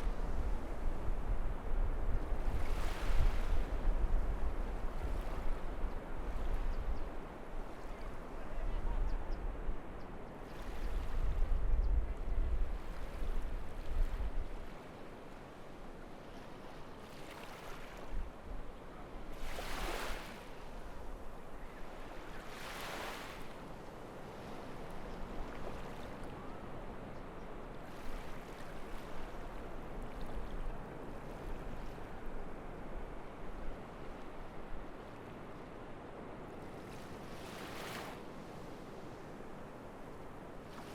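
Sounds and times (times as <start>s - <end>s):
ocean waves breaking on beach: 0.0s - 11.6s, 12.2s - 40.9s
wind rumble on microphone: 0.0s - 14.9s, 24.0s - 40.9s.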